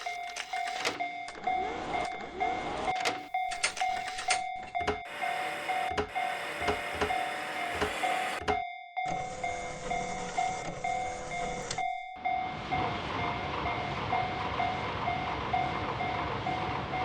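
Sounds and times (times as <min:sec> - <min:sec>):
level crossing bell dinging: 0:00.0 - 0:12.9
sharp clicks and knocks: 0:02.9 - 0:08.7.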